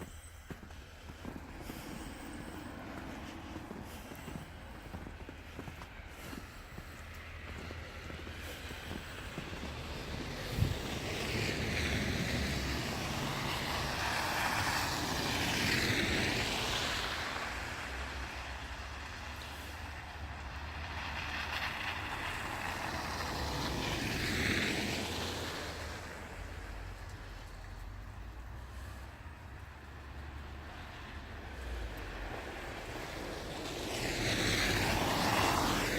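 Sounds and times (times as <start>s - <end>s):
tyres hissing through slush: 0.0s - 35.9s.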